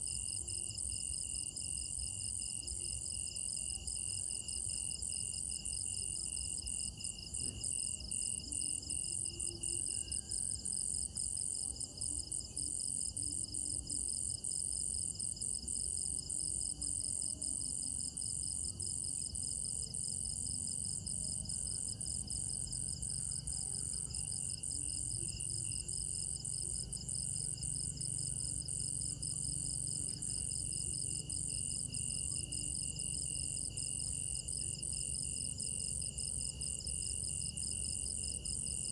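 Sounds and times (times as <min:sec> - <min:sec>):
intermittent cricket trill: 0:00.0 - 0:38.9
loud steady high cricket trill: 0:00.0 - 0:38.9
rapidly pulsing cricket trill: 0:17.7 - 0:38.9.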